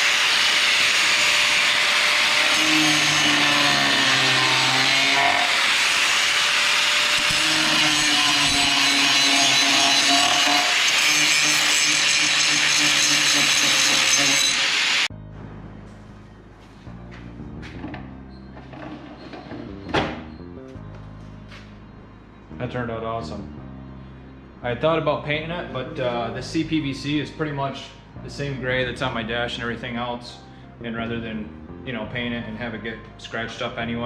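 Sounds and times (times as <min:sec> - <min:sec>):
power saw running: 0:00.0 - 0:15.1.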